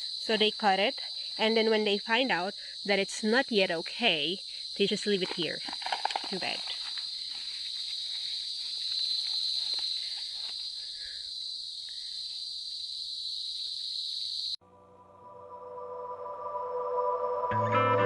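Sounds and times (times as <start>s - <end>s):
insects droning: 0.0s - 14.6s
guitar music: 14.7s - 18.0s.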